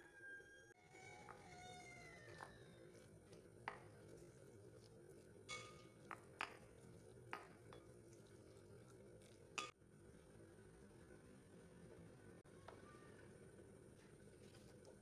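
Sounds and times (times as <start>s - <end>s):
spoon clinking against bowl: 5.5s - 6.6s.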